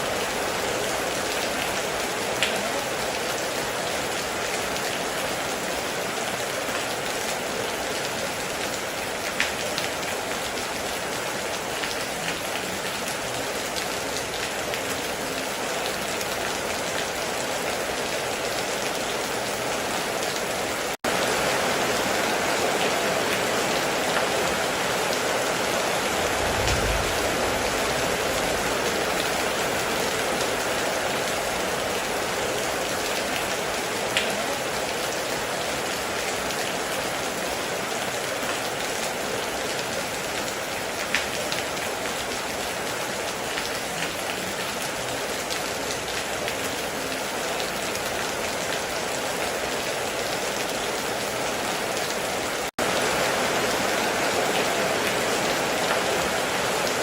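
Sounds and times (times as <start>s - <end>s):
heavy rain on a metal roof: 0.0s - 57.0s
low rumble: 26.2s - 28.8s.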